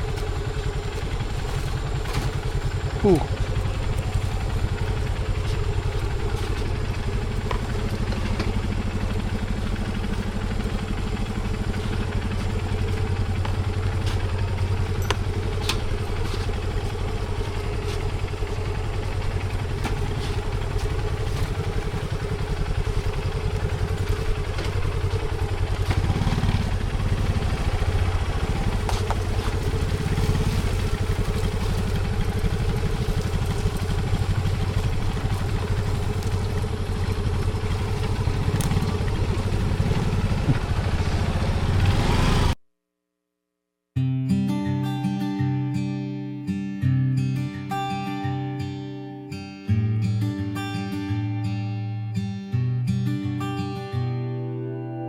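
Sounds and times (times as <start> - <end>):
small engine running: 0.0 - 42.6.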